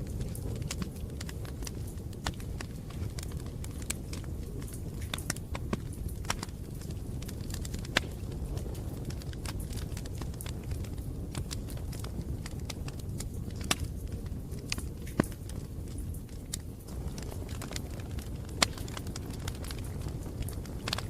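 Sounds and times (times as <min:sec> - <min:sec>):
burning wood popping and snapping: 0:00.0 - 0:21.0
low rumble of flames: 0:00.0 - 0:21.0.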